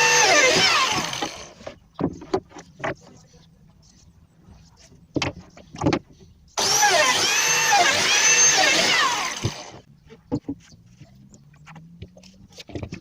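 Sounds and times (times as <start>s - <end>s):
electric power tool motor: 0.0s - 1.6s, 6.6s - 9.8s.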